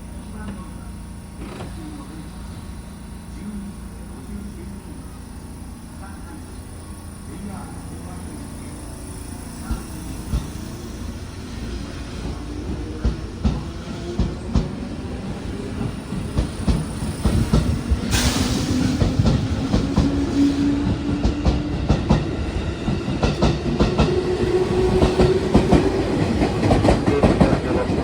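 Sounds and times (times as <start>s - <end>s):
train wheels clacking over rail joints: 1.4s - 2.0s, 24.9s - 28.0s.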